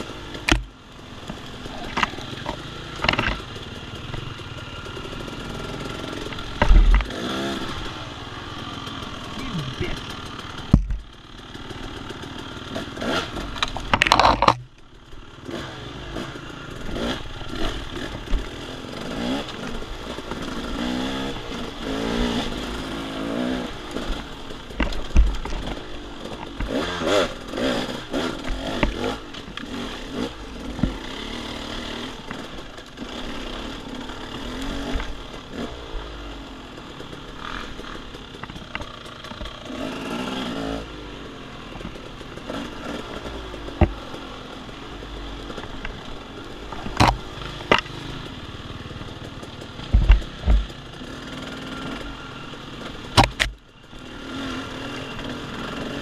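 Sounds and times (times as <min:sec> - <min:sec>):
dirt bike engine revving: 0:00.0 - 0:56.0
bike clattering over rough ground: 0:00.2 - 0:05.4, 0:09.8 - 0:15.0, 0:41.8 - 0:48.0, 0:48.9 - 0:52.0.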